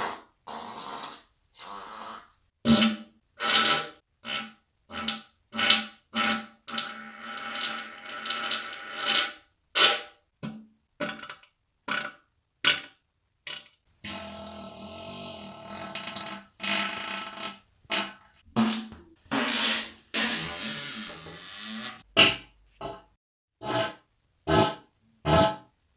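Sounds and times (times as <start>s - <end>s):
farts: 14.3s - 17.6s, 18.7s - 22.4s.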